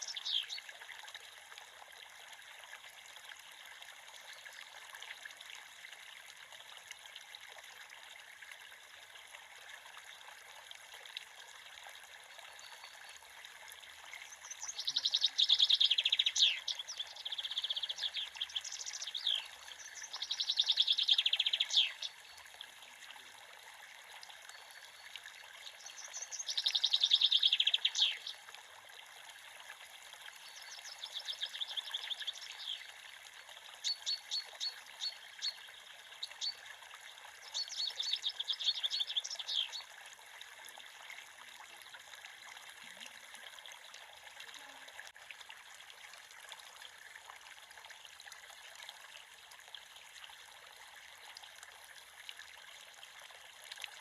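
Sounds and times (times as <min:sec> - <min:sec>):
songbird singing trilled phrases: 0:00.0 - 0:00.6, 0:14.3 - 0:22.4, 0:25.6 - 0:28.4, 0:30.4 - 0:32.9, 0:33.8 - 0:36.6, 0:37.4 - 0:39.8
creek running: 0:00.0 - 0:54.0.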